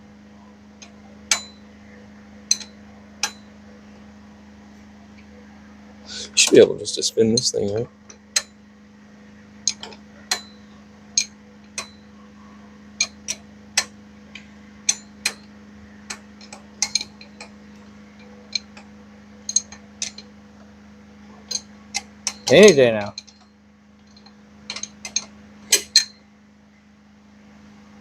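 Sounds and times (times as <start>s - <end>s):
steady low hum: 0.0s - 28.0s
metallic clicks of hand tools: 9.7s - 10.5s, 16.1s - 17.5s, 24.1s - 26.2s.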